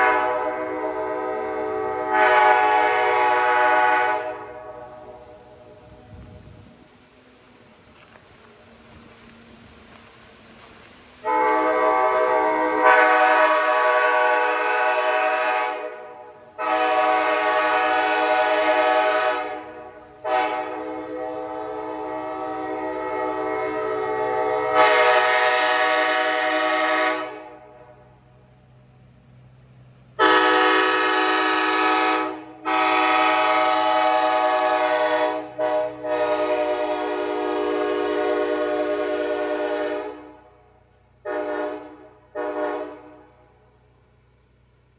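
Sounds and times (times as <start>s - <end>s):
train horn quick toots: 0.0s - 5.3s, 11.2s - 27.8s, 30.2s - 40.6s, 41.2s - 43.4s
train horn chord blasts: 0.0s - 5.8s, 11.2s - 28.0s, 30.2s - 43.6s.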